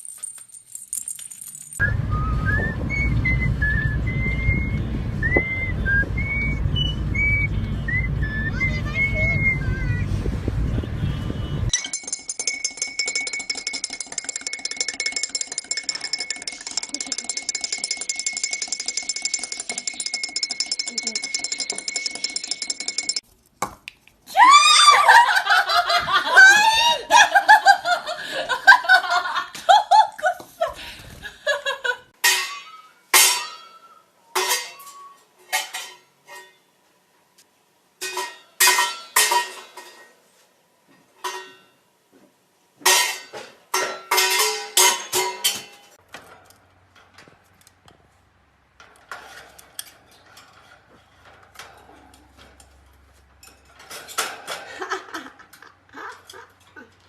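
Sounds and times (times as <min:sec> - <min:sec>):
sharp clinks and clatters: 0:00.0 - 0:01.8, 0:11.7 - 0:23.3
rapid chattering with pitch glides: 0:11.9 - 0:23.2.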